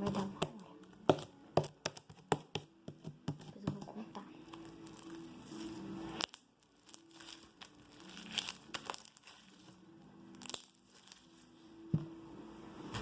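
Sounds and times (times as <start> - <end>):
slime crackling and clicking: 6.2 - 9.4.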